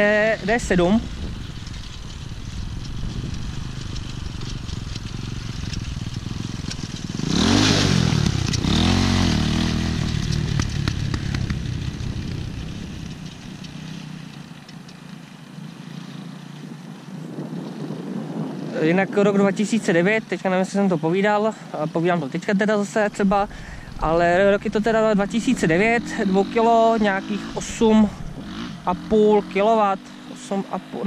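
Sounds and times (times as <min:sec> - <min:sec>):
dirt bike engine passing: 0:00.0 - 0:31.0.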